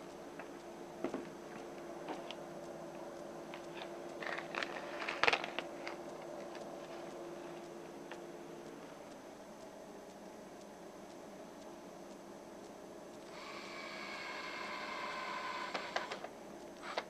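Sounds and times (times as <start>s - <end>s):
steady low hum: 0.0s - 17.0s
small parts clicking and knocking: 3.5s - 6.6s.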